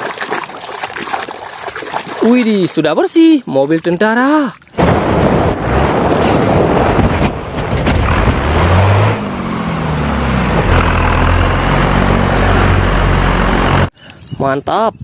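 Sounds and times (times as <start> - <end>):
engine running: 7.7 - 13.9.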